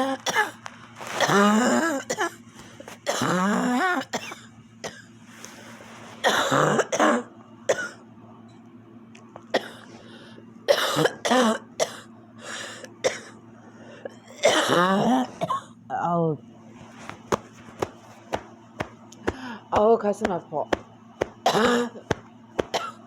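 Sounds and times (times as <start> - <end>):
person coughing harshly: 0.0 - 2.4, 3.0 - 5.1, 6.2 - 8.0, 9.5 - 9.9, 10.7 - 12.1, 13.0 - 13.4, 14.1 - 15.8, 21.2 - 23.0.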